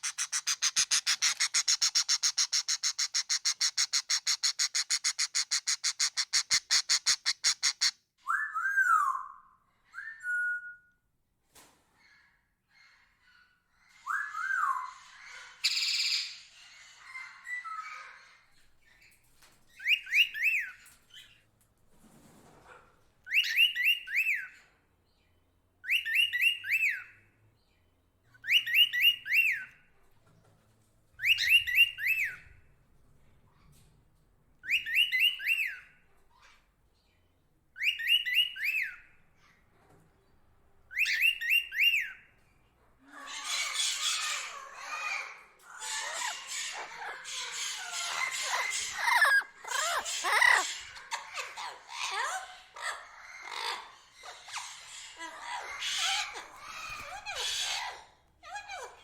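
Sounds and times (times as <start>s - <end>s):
harsh squawk: 0.0s - 7.9s, 43.1s - 58.1s.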